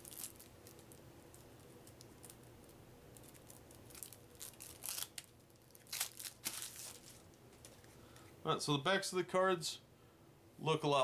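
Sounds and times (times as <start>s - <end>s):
packaging crinkling and rustling: 0.0s - 8.3s.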